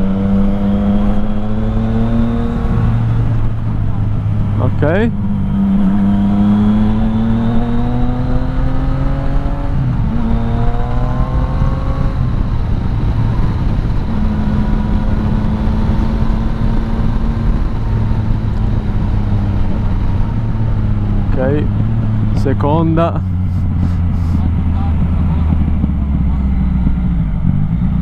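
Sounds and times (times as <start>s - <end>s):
motorcycle engine revving: 0.0s - 28.0s
wind rush: 0.0s - 28.0s.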